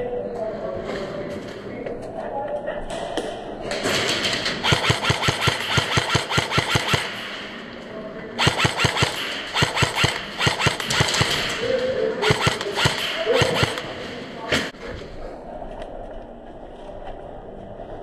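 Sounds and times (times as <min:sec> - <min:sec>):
airsoft gun firing full auto: 0:04.0 - 0:07.6, 0:08.4 - 0:11.6, 0:12.2 - 0:14.1.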